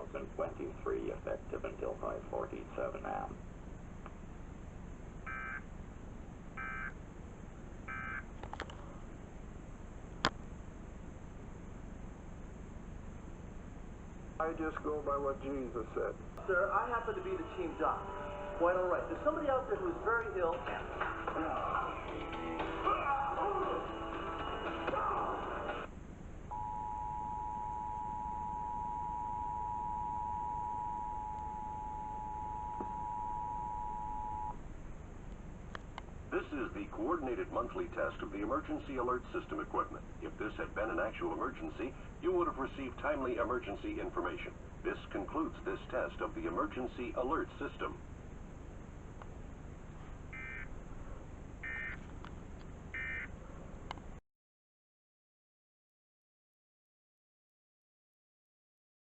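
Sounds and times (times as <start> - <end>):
low background hum: 0.0 - 54.2
two-tone alert signal: 26.5 - 34.6.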